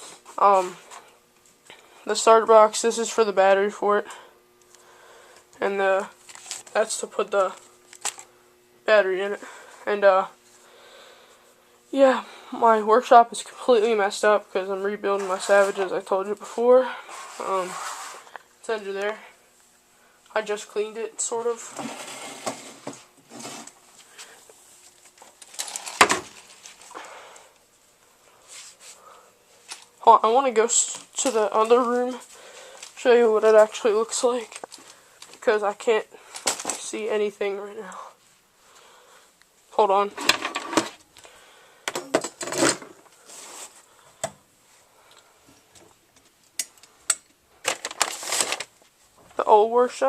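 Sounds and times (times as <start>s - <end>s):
objects shuffled and scraped: 17.0s - 18.4s, 21.5s - 27.0s, 40.1s - 41.0s, 42.3s - 43.9s, 47.6s - 49.0s.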